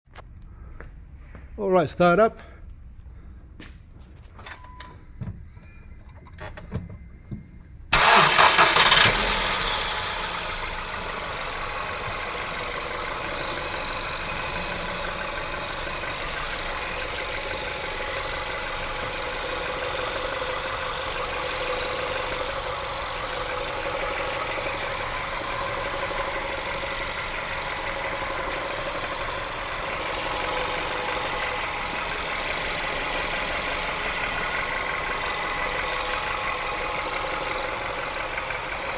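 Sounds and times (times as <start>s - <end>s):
car engine starting and idling: 3.9s - 38.9s
gearbox whirring: 8.0s - 35.8s.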